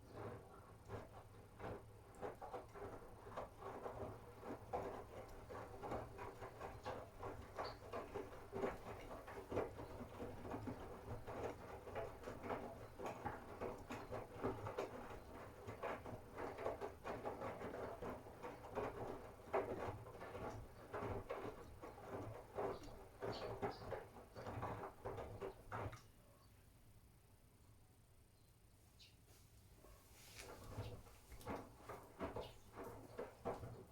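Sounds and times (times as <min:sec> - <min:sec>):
laundry clicks and knocks: 0:30.4 - 0:33.9.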